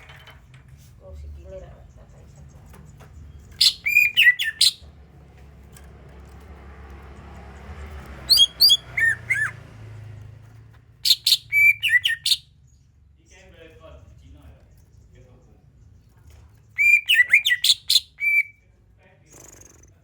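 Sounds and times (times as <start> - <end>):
bird chirps and whistles: 3.6 - 4.8, 8.3 - 9.5, 11.0 - 12.4, 16.8 - 18.6.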